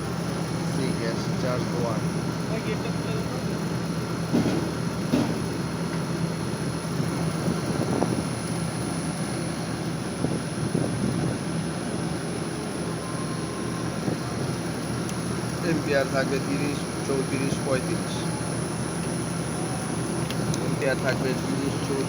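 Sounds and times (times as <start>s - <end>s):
outdoor air conditioning unit humming: 0.0s - 22.0s.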